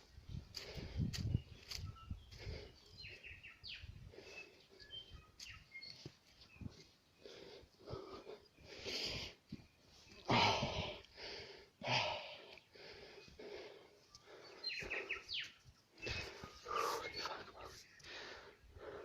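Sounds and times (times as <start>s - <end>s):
person breathing: 0.5s - 1.2s, 7.2s - 9.5s, 10.2s - 15.4s, 16.0s - 19.0s.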